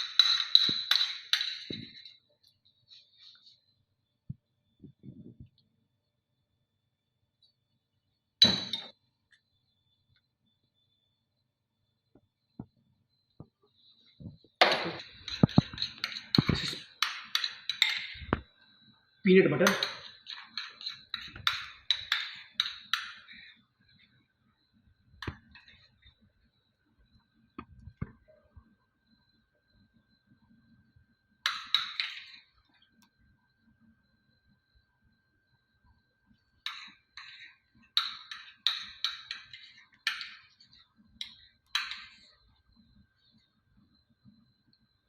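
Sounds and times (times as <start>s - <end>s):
metal spoon clinking on glass: 0.0s - 2.2s, 8.4s - 9.0s, 14.6s - 18.4s, 19.6s - 23.4s, 36.6s - 42.3s.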